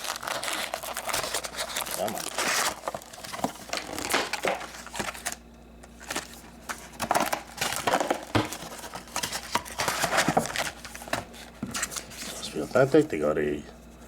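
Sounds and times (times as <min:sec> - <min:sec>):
plastic wrapping tearing and crinkling: 0:00.0 - 0:12.5.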